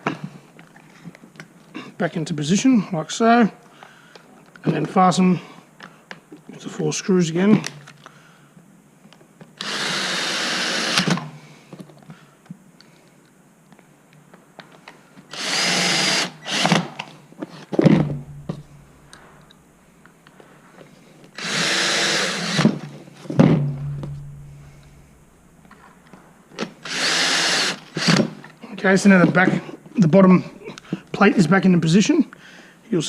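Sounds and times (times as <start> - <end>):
cordless drill running: 9.6 - 11.2, 15.3 - 17.0, 21.4 - 22.7, 26.8 - 28.3.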